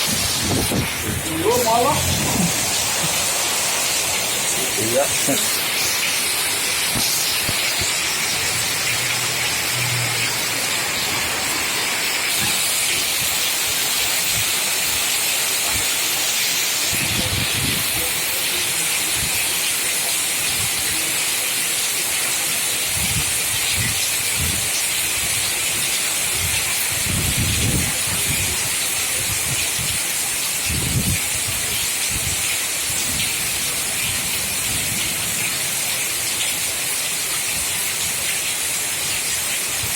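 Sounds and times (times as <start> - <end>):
rumbling wind gusts: 0.0 - 13.4
heavy rain pouring: 0.0 - 39.9.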